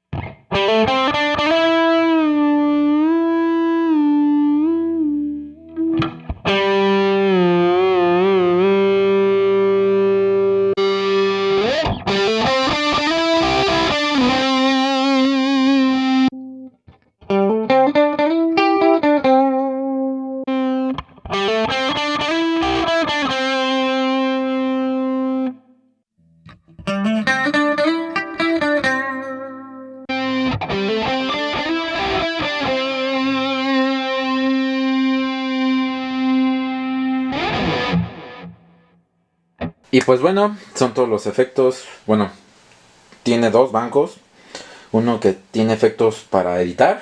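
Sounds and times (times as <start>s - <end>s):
electric guitar lead with bends: 0.0s - 39.0s.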